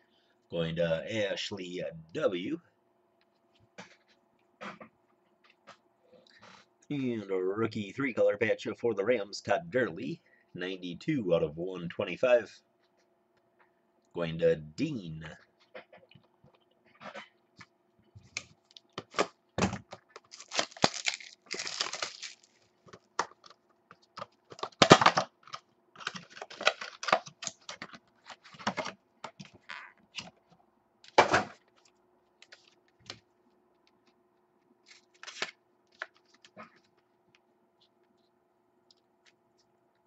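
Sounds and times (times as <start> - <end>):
card packaging rustling and tearing: 20.1 - 23.6, 24.5 - 28.9, 34.8 - 36.9.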